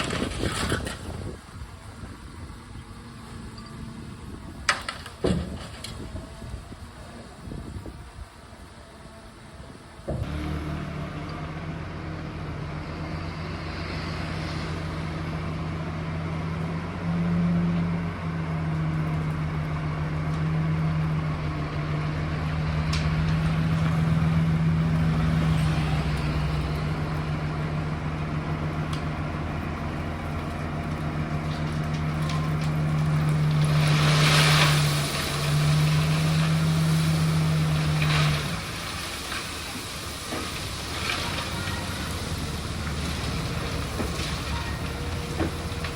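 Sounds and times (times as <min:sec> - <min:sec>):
truck engine running: 0:00.0 - 0:45.9.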